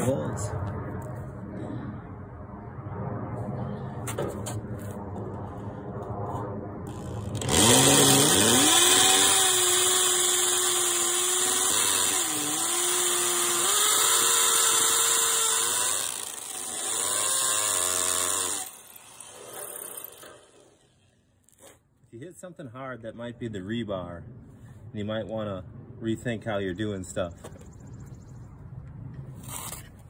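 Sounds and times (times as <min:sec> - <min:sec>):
power drill boring into concrete: 0:06.9 - 0:20.8.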